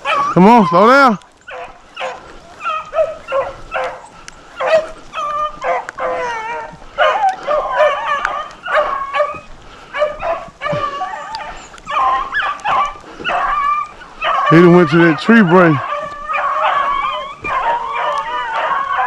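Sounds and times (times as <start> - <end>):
hounds baying and yelping: 0.0 - 19.0.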